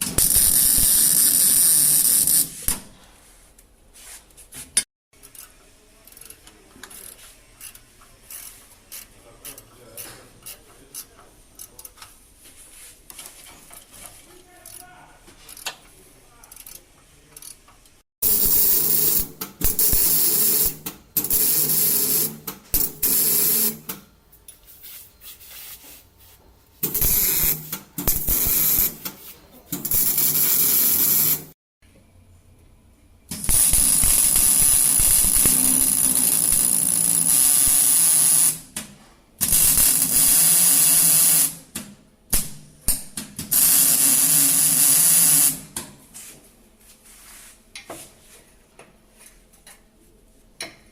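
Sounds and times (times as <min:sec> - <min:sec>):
welder buzzing and crackling: 0:00.0 - 0:02.8, 0:18.2 - 0:23.8, 0:26.8 - 0:29.1, 0:29.8 - 0:31.6, 0:33.3 - 0:38.6, 0:39.4 - 0:41.6, 0:42.9 - 0:45.6.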